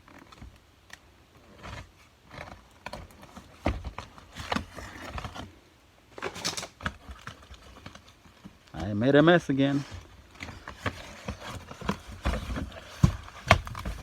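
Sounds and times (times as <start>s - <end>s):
packaging crinkling and ripping: 6.2s - 8.2s.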